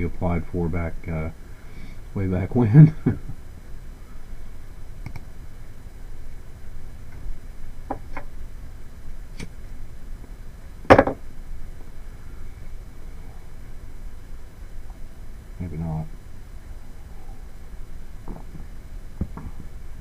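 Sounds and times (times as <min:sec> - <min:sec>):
steady low hiss: 0:00.0 - 0:20.0
loud knock: 0:10.9 - 0:11.2.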